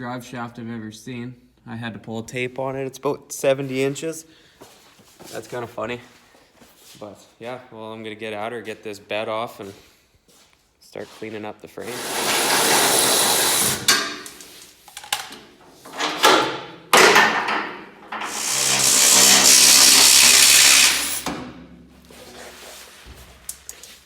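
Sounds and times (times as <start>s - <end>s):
handheld power tool running: 12.0s - 14.0s, 18.2s - 21.4s.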